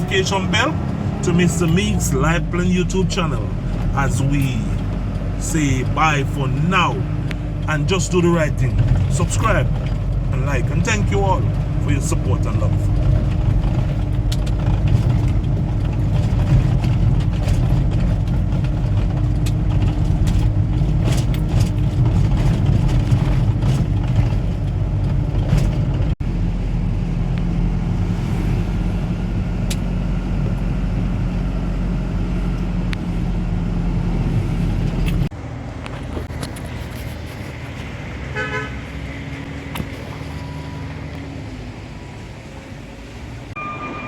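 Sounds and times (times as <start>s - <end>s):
vehicle engine and road rumble: 0.0s - 44.0s.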